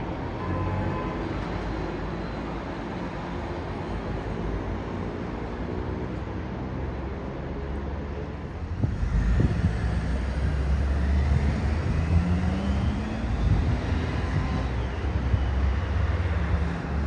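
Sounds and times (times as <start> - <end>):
bus engine rumble: 1.3 - 17.0
high whine rising in pitch: 8.8 - 17.0.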